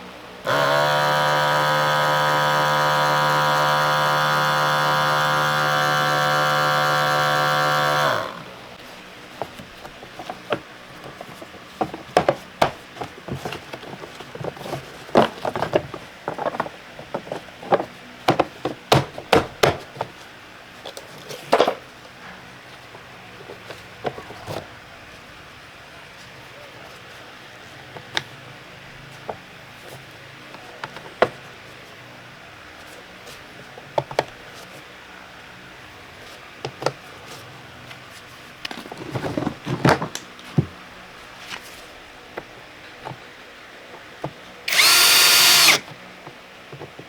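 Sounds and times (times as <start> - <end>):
small motor whining: 0.4 - 8.6, 44.7 - 45.9.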